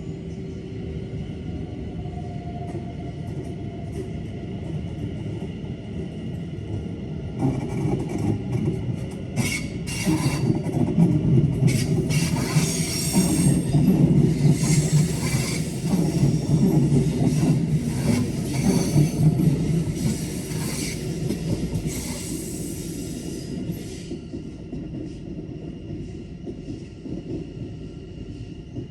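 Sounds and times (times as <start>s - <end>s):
train rumbling: 0.0s - 28.9s
train wheels squealing and clacking: 7.4s - 25.2s.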